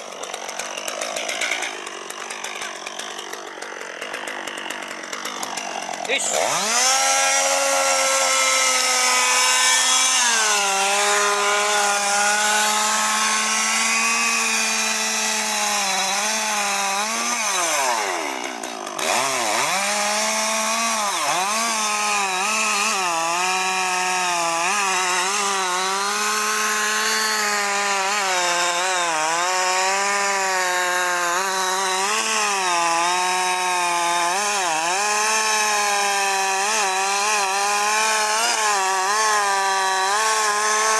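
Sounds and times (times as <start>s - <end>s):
chainsaw cutting wood: 0.0s - 40.9s.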